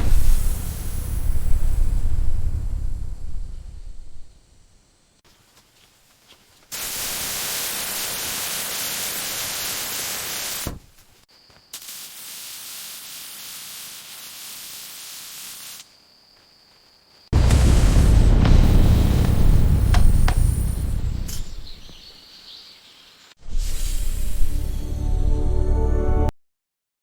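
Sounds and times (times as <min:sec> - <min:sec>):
steady hissing noise: 0:00.0 - 0:16.2, 0:16.8 - 0:24.9.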